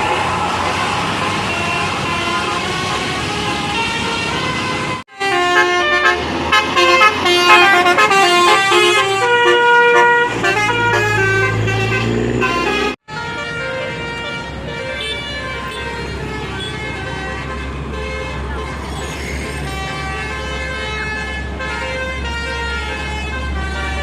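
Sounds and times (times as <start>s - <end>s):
street noise: 0.0s - 24.0s
bus air horn melody: 1.4s - 24.0s.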